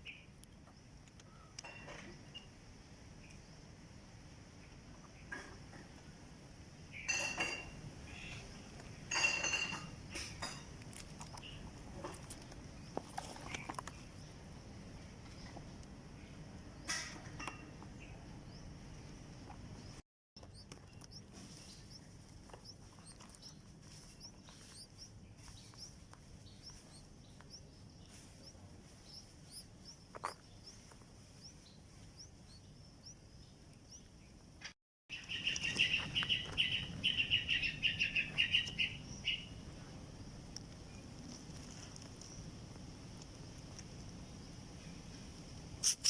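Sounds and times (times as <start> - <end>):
nestling chirping loudly: 20.4 - 34.1.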